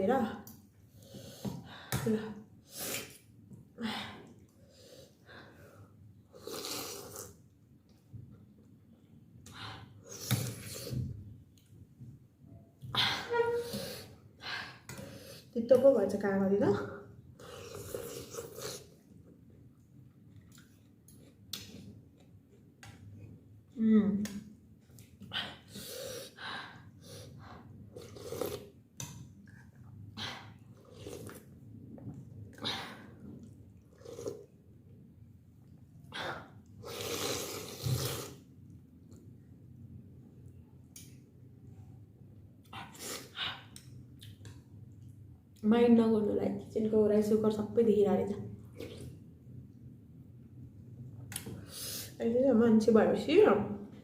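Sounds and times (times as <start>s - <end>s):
mouth sounds of eating soup: 6.3s - 7.5s, 16.8s - 19.2s, 27.9s - 28.8s, 36.1s - 38.5s
person chewing and slurping soup: 17.3s - 23.5s, 27.6s - 34.6s.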